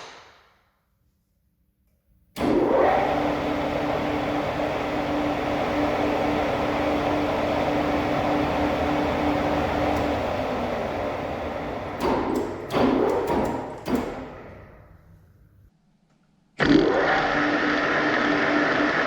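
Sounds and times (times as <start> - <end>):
lathe mechanical noise: 2.4 - 14.6.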